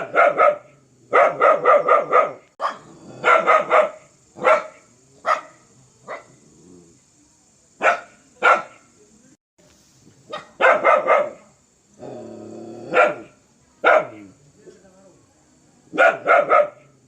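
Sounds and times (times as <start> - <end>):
dog barking: 0.0 - 6.4, 7.8 - 8.9, 10.3 - 11.5, 12.9 - 14.3, 15.9 - 16.9.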